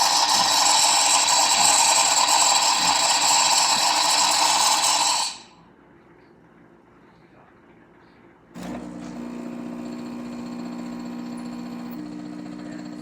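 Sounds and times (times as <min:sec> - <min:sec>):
espresso machine hissing: 0:00.0 - 0:05.5, 0:08.6 - 0:13.0.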